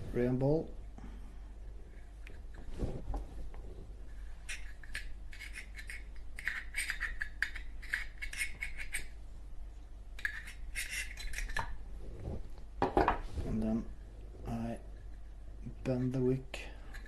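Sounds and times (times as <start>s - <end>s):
scratchy rubbing on metal: 10.2s - 11.6s.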